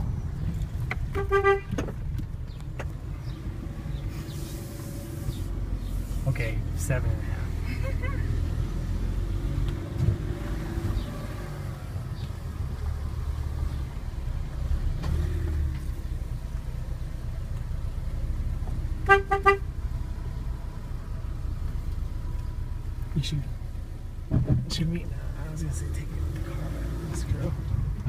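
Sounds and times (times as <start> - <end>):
car engine running: 0.0 - 8.3
road noise: 0.0 - 28.0
car horn beeps: 1.1 - 1.8, 19.0 - 19.7.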